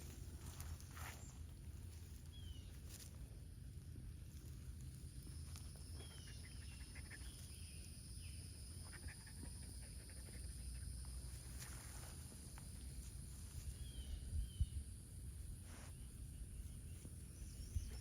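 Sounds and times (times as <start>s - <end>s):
bird chirps: 5.8s - 9.4s.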